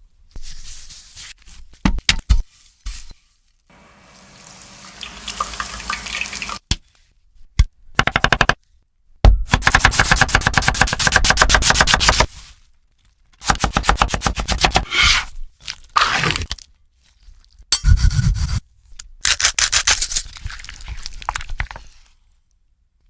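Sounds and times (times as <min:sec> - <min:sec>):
rapid chopping strokes: 0:09.5 - 0:12.3, 0:13.4 - 0:15.3.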